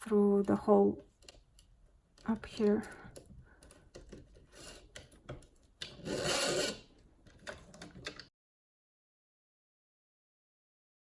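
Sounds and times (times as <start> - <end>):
wires rubbing through plastic: 3.7 - 8.2
scraping rub: 4.2 - 5.2, 5.8 - 7.0.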